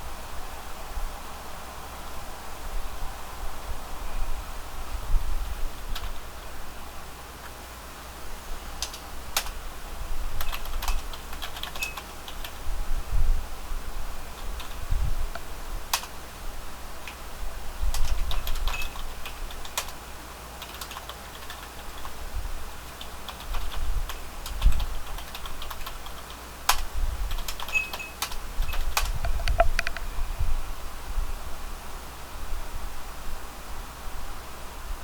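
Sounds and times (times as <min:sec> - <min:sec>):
computer keyboard typing: 0:05.9 - 0:06.2, 0:08.8 - 0:09.6, 0:10.4 - 0:12.6, 0:14.4 - 0:16.2, 0:17.9 - 0:20.0, 0:20.6 - 0:22.2, 0:22.9 - 0:30.0.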